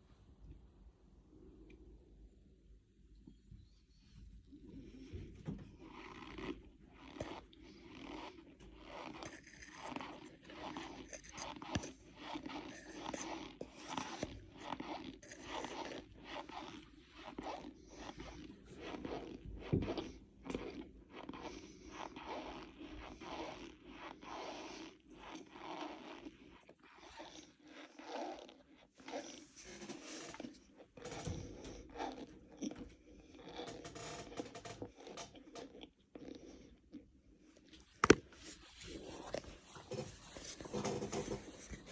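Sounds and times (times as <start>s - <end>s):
cornstarch powder crunching: 6.4s - 17.8s.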